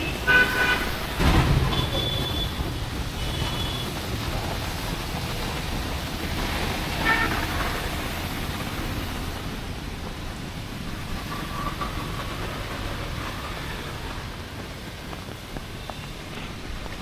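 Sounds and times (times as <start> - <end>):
vehicle horn honk: 0.0 - 1.0, 7.0 - 7.7
passing vehicles: 0.0 - 17.0
rain hiss: 0.0 - 17.0.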